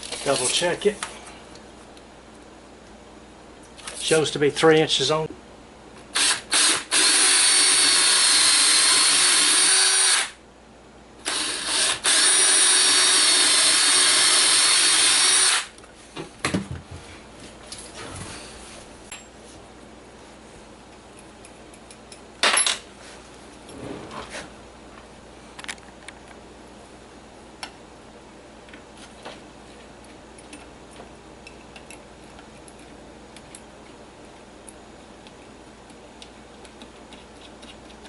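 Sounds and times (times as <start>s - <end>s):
electric drill running: 6.2s - 10.4s, 11.2s - 15.7s.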